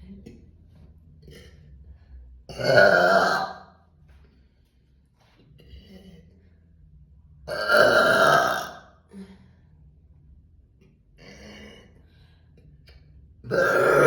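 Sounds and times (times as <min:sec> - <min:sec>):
woman burping: 0:02.5 - 0:03.6, 0:07.5 - 0:08.9, 0:13.5 - 0:14.0.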